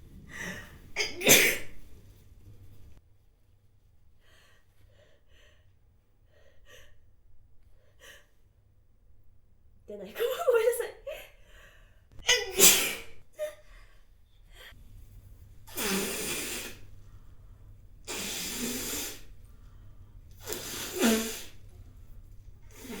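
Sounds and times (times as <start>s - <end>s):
woman sneezing: 1.0s - 1.8s, 12.2s - 13.6s.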